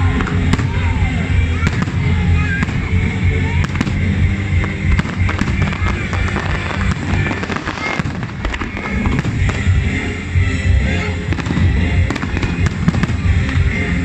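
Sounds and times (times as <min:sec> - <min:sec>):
fireworks bangs and crackles: 0:00.0 - 0:14.0
low rumble of bursts: 0:00.0 - 0:14.0
music: 0:00.0 - 0:14.0.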